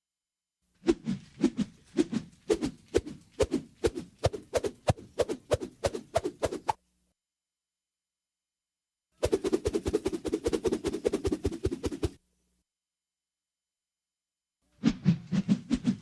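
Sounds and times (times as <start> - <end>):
rope whooshing with clicks: 0.8 - 6.8, 9.2 - 12.2, 14.8 - 16.0.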